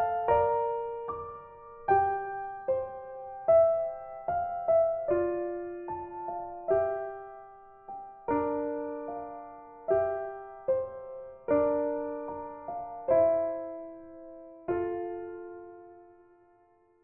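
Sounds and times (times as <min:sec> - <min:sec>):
soft piano chords: 0:00.0 - 0:17.0.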